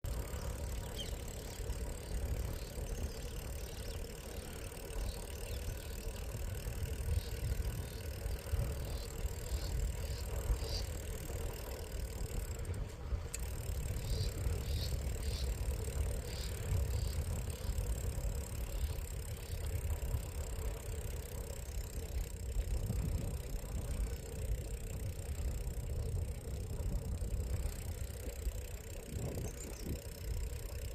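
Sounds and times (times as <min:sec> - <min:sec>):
wind on microphone: 0:05.6 - 0:11.5, 0:22.5 - 0:30.6.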